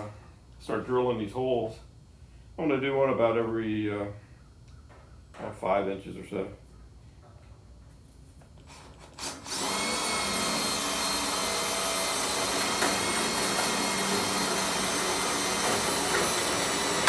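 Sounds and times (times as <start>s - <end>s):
electric drill drilling steel: 8.8s - 17.0s.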